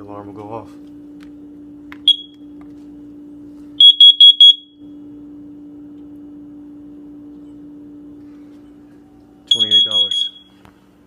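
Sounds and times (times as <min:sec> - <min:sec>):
high-pitched alarm beeps: 0:02.1 - 0:02.4, 0:03.8 - 0:04.8, 0:09.5 - 0:10.6.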